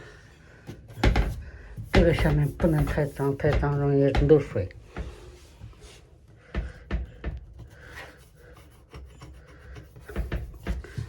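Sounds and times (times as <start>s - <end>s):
rubbing and wiping: 1.8s - 4.5s, 7.4s - 11.0s.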